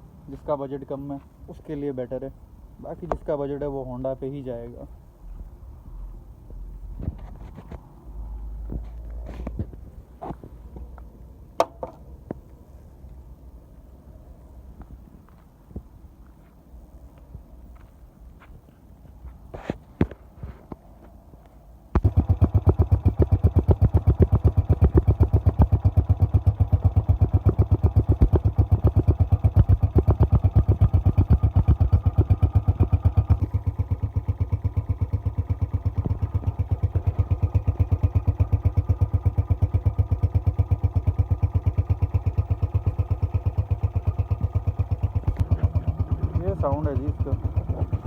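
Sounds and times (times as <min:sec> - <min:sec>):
motorcycle engine idling: 0:22.0 - 0:48.0
motorcycle engine starting: 0:22.0 - 0:48.0.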